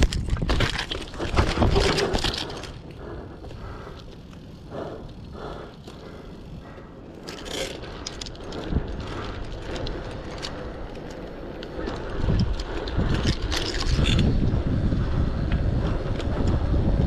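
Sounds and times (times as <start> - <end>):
bicycle tyres crunching on gravel: 0.0 - 17.0.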